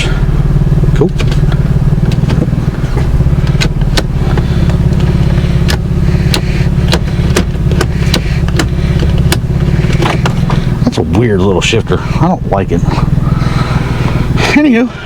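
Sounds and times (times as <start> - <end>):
car engine idling: 0.0 - 15.0
gear shifter clicks: 1.0 - 11.0.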